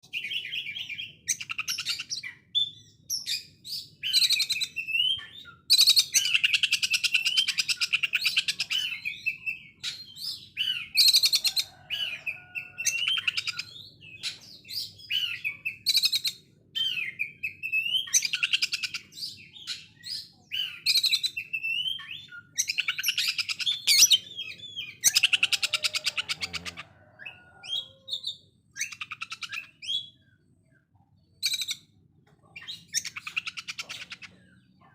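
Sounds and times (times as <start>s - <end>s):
songbird rapid rattling song: 0.0s - 11.4s, 12.8s - 26.8s
bird whistling and chattering: 0.0s - 12.2s, 12.8s - 30.3s, 31.4s - 34.6s.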